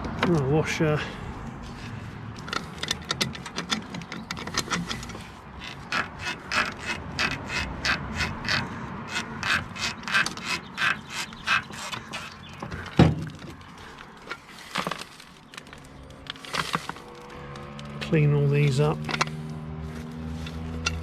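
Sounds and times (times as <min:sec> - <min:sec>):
ratchet spanner clicking: 0:19.0 - 0:21.0.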